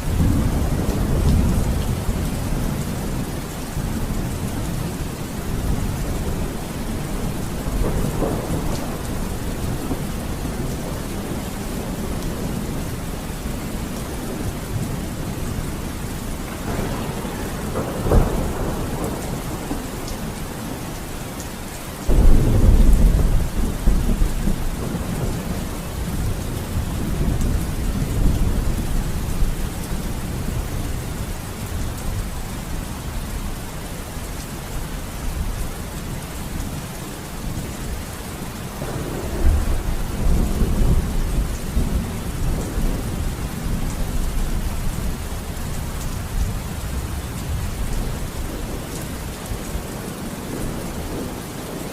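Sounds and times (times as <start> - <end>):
thunder rumbling: 0.0 - 33.5, 36.4 - 51.9
steady rain: 0.0 - 51.9
loud thunderclap: 6.2 - 12.7, 16.4 - 20.3, 22.1 - 29.6, 38.8 - 44.6.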